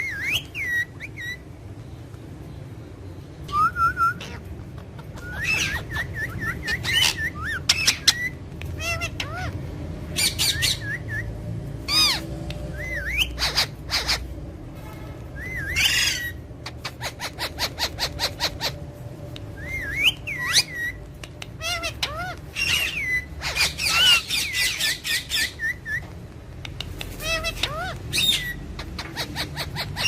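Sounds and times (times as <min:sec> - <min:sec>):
parrots squawking: 0:00.0 - 0:01.4, 0:04.0 - 0:11.1, 0:11.8 - 0:14.4, 0:15.4 - 0:30.0
parrots whistling: 0:00.0 - 0:01.4, 0:03.4 - 0:14.3, 0:15.4 - 0:18.8, 0:19.6 - 0:30.0
parrot clicking: 0:26.2 - 0:27.8.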